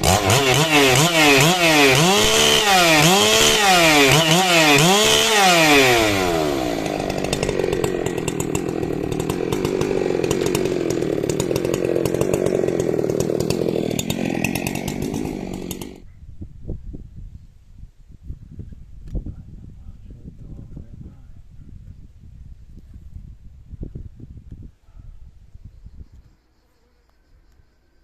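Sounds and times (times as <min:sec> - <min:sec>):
chainsaw revving and cutting wood: 0:00.0 - 0:16.1.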